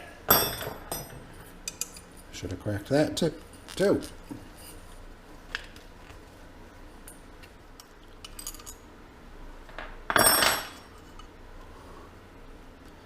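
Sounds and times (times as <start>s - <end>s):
small metal parts clinking: 8.2s - 8.8s.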